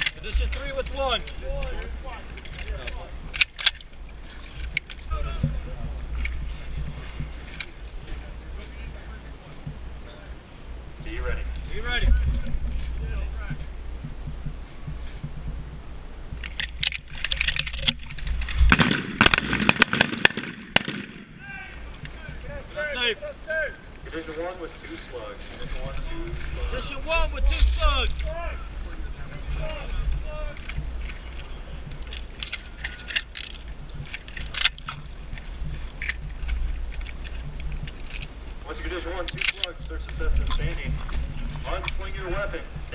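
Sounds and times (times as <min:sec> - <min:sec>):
shotgun loading clicks: 0:00.0 - 0:05.0, 0:16.4 - 0:21.0, 0:30.6 - 0:38.3, 0:39.2 - 0:39.8
shotgun shots: 0:18.6 - 0:21.4.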